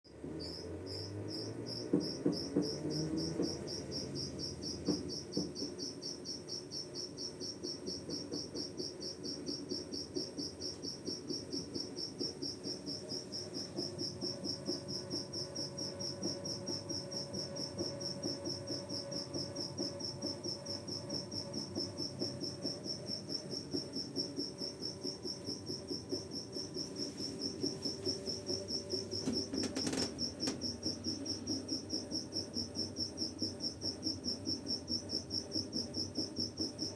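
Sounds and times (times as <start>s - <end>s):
washing machine spinning: 0.1s - 36.9s
light knocking: 7.6s - 34.0s.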